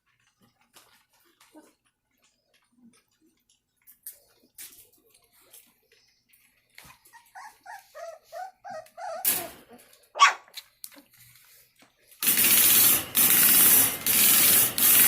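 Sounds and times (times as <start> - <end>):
dog whining: 6.8 - 10.5
dog yelping: 6.9 - 10.5.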